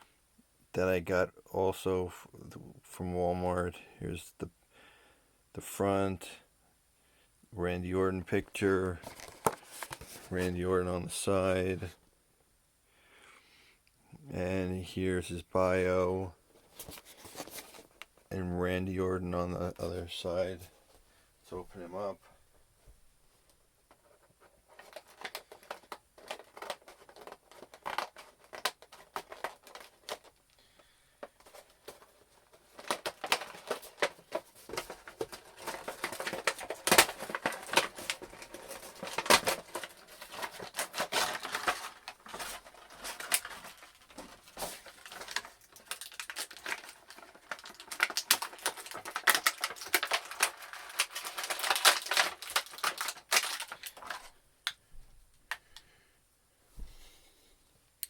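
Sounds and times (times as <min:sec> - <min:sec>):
packaging tearing and crinkling: 0:24.7 - 0:54.3.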